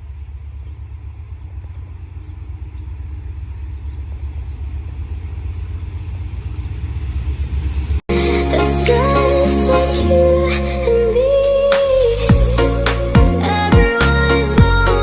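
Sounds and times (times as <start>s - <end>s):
locomotive rumbling: 0.0s - 15.0s
music: 8.1s - 15.0s.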